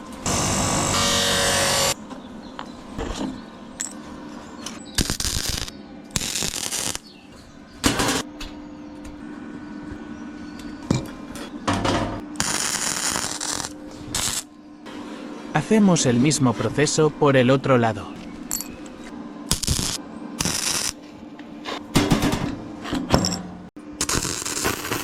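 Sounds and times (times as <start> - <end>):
welder welding steel: 0.0 - 2.0, 5.0 - 7.1, 12.4 - 14.5, 19.5 - 21.0, 24.0 - 25.0.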